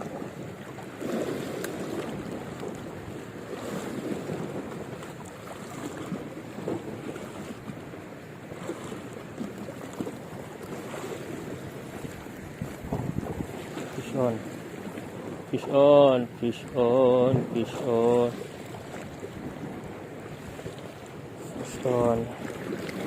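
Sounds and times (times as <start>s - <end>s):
sea water rushing: 0.0s - 23.0s
wind buffeting microphone: 10.3s - 15.5s, 18.4s - 23.0s.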